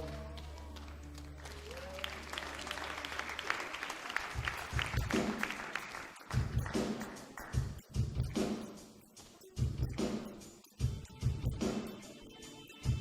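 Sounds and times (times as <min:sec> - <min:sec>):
congregation clapping: 0:00.0 - 0:07.6.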